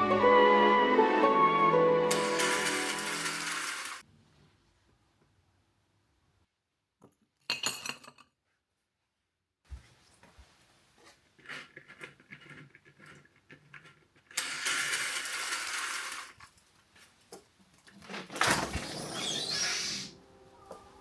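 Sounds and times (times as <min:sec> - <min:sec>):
curtain sliding along rail: 0:02.0 - 0:04.0, 0:18.4 - 0:20.2
sliding door opening: 0:02.0 - 0:04.0, 0:18.3 - 0:20.2.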